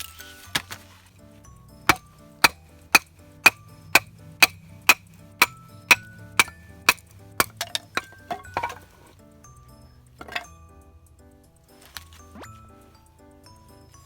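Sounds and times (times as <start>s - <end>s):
faint background music: 0.0s - 14.0s
axe chopping into log: 0.5s - 0.9s, 1.9s - 9.1s.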